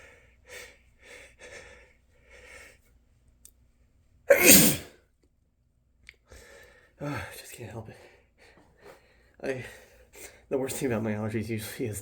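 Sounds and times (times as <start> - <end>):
man sneezing: 4.3 - 4.9.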